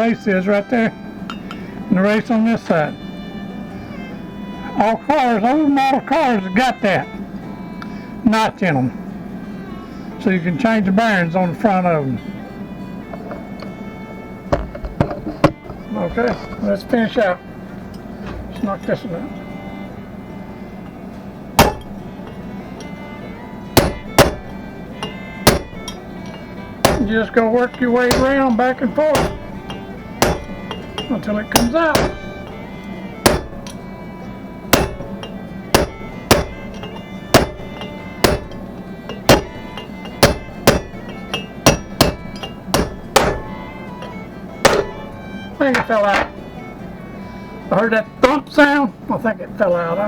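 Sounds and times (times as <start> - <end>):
hammer striking metal: 1.3 - 1.8, 14.5 - 16.7, 20.8 - 46.6.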